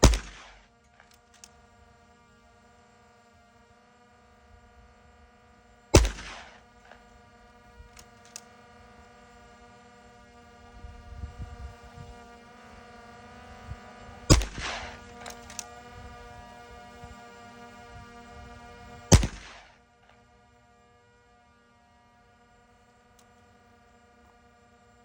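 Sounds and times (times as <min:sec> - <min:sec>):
air rifle shots: 0:00.0 - 0:00.8, 0:05.9 - 0:07.0, 0:14.3 - 0:15.6, 0:19.1 - 0:19.8
steady hum: 0:00.0 - 0:25.0.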